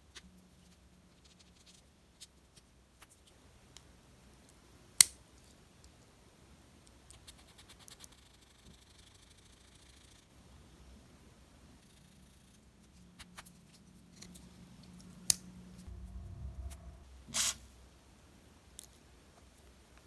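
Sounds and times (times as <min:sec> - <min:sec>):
short scratchy burst: 0:15.9 - 0:17.7.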